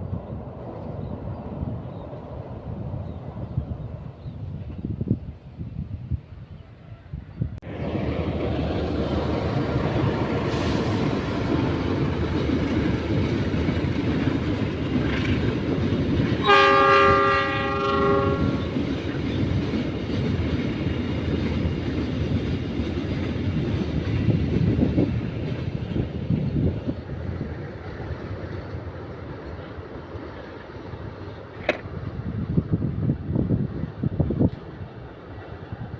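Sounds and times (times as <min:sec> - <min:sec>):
train wheels rumbling on rails: 0:07.4 - 0:35.9
train horn: 0:16.4 - 0:18.7.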